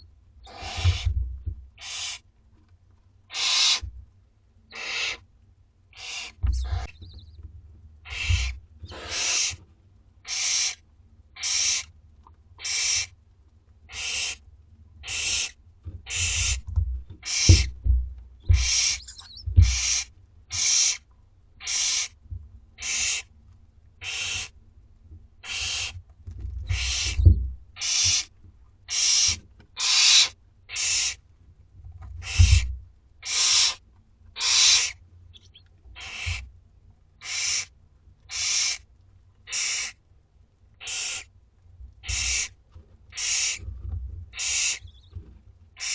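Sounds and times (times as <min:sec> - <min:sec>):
owl nestlings rasping calls: 0:00.4 - 0:01.2, 0:01.8 - 0:02.2, 0:03.3 - 0:03.9, 0:04.7 - 0:05.2, 0:05.9 - 0:07.4, 0:08.0 - 0:09.6, 0:10.2 - 0:10.8, 0:11.4 - 0:11.9, 0:12.6 - 0:13.1, 0:13.9 - 0:14.4, 0:15.0 - 0:17.8, 0:18.4 - 0:21.0, 0:21.6 - 0:22.2, 0:22.8 - 0:23.3, 0:24.0 - 0:24.6, 0:25.4 - 0:26.0, 0:26.6 - 0:28.3, 0:28.9 - 0:31.2, 0:32.2 - 0:33.8, 0:34.4 - 0:36.5, 0:37.2 - 0:37.7, 0:38.3 - 0:38.8, 0:39.5 - 0:40.0, 0:40.8 - 0:41.3, 0:42.0 - 0:43.6, 0:44.3 - 0:45.1
low thumps: 0:00.7 - 0:01.8, 0:06.4 - 0:08.7, 0:15.8 - 0:20.0, 0:26.3 - 0:27.8.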